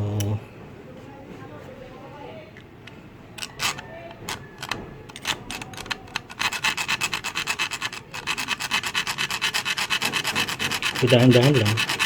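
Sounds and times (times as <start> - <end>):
small saw rasping on metal: 6.1 - 12.0.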